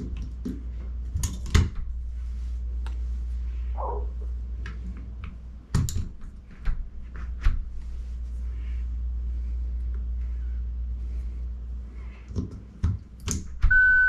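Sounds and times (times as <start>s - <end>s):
steady low hum: 0.0s - 14.0s
sharp clicks and knocks: 12.3s - 13.7s.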